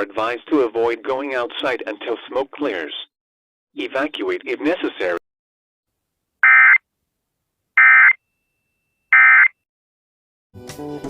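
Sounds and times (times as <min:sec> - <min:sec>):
digital data tone bursts: 0:07.8 - 0:08.2, 0:09.2 - 0:09.5.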